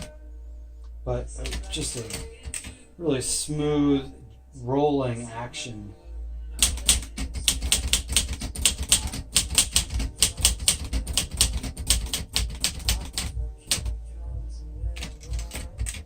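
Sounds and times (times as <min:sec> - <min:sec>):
manual typewriter keys striking: 0:01.4 - 0:02.8, 0:06.6 - 0:14.0, 0:15.0 - 0:16.0.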